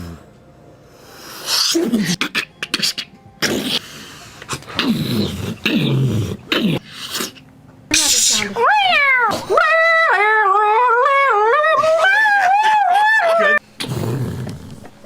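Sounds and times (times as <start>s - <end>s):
mouth hissing bursts: 1.1s - 4.3s, 6.8s - 8.6s
mouth clicks: 1.5s - 3.8s.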